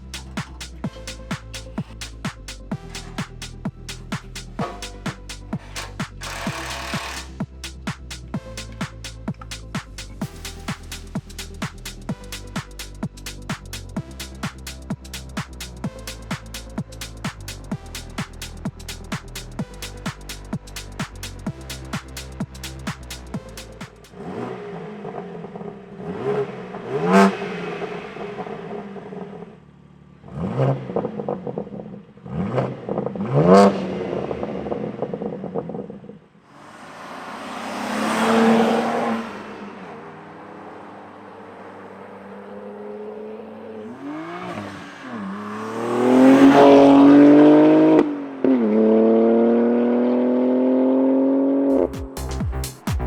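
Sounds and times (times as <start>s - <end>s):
car exhaust revving: 0.0s - 29.0s, 42.1s - 52.7s
car rushing past: 36.5s - 51.8s.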